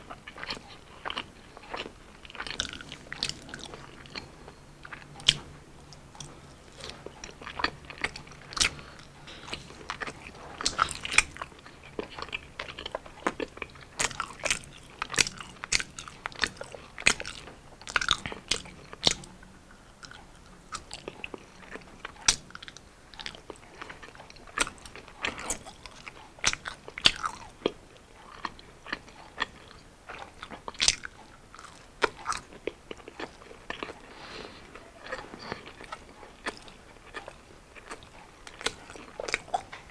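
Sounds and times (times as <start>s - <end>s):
wet chewing: 0.1s - 19.4s, 20.0s - 39.9s
crunchy food bites: 0.3s - 19.3s.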